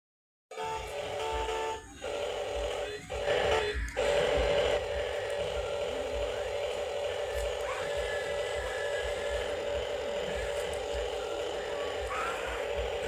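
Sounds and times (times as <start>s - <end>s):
hydraulic pump motor whining: 0.6s - 13.0s.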